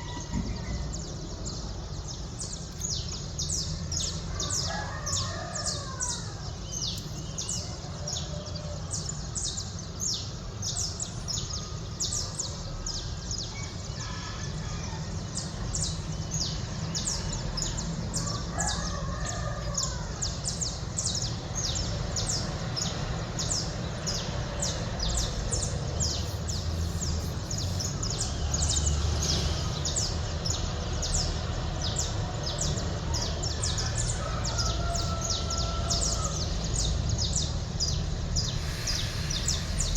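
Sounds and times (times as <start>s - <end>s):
small birds chirping: 0.0s - 14.0s, 14.6s - 39.9s
low city rumble: 0.0s - 39.9s
rooster crowing: 4.3s - 6.5s, 13.7s - 15.2s, 18.2s - 20.4s, 33.3s - 36.8s.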